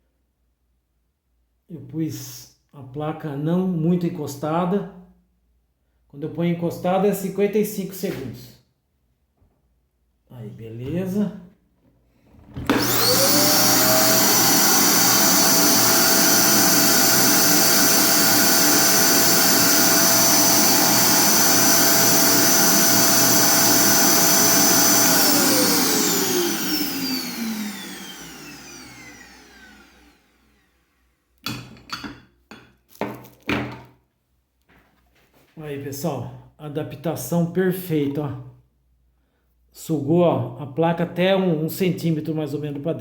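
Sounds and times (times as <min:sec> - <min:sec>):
suction motor whine: 0:12.6 - 0:30.7.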